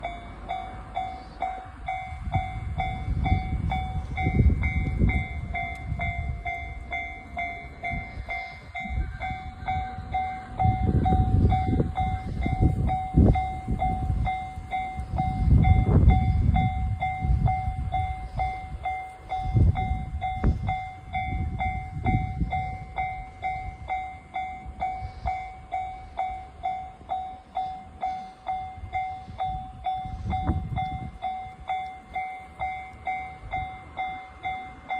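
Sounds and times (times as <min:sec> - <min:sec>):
level crossing bell clanging: 0:00.0 - 0:34.9
train rumbling: 0:00.0 - 0:34.9.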